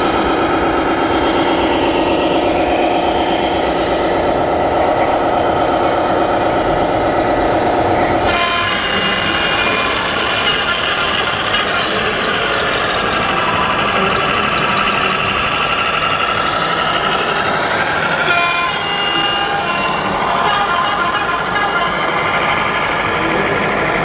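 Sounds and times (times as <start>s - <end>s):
toy truck motors whining: 8.2s - 24.0s.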